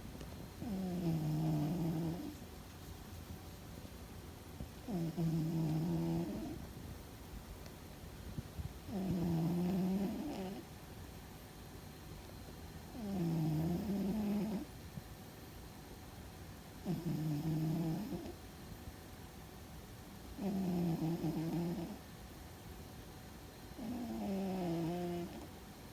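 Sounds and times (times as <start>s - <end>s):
cat snoring: 0.6s - 2.4s, 4.9s - 6.6s, 8.9s - 10.6s, 12.9s - 14.7s, 16.8s - 18.4s, 20.4s - 22.0s, 23.8s - 25.5s.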